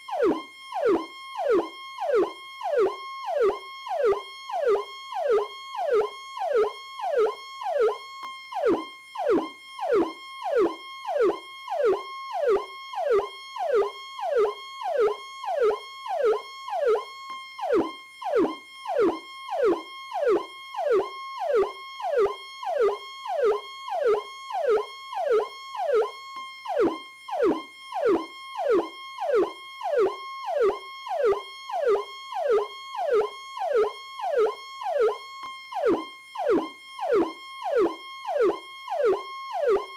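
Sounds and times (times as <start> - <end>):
police siren: 0.0 - 39.9.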